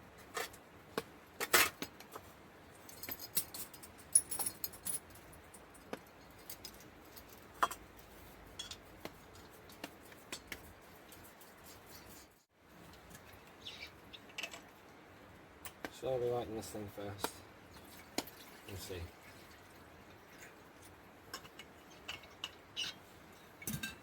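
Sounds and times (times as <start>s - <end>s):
metallic clinks of cooking gear: 2.8s - 7.9s.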